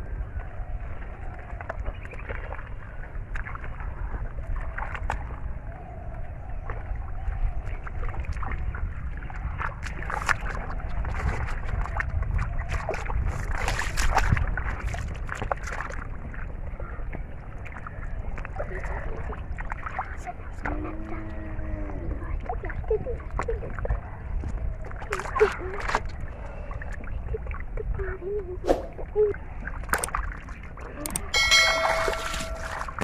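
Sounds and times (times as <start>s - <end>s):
steady low rumble: 0.0s - 29.9s
water sloshing and splashing: 0.0s - 33.0s.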